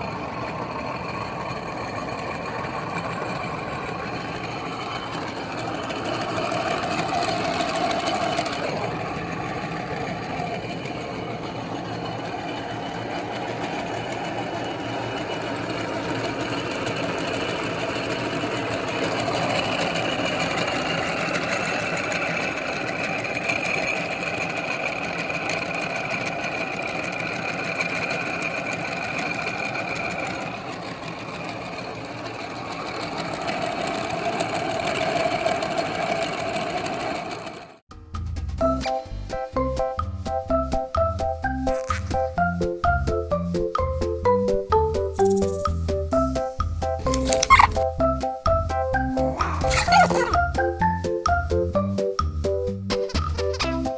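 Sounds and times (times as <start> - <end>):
electric meat grinder whining: 2.7 - 37.7.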